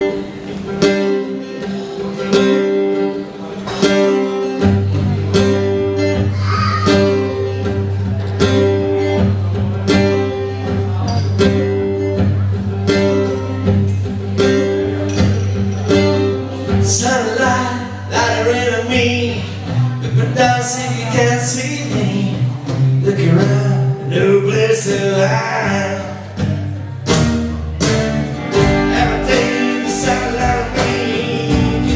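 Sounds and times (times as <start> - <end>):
strummed acoustic guitar: 0.0 - 31.9
low bass: 26.4 - 31.9.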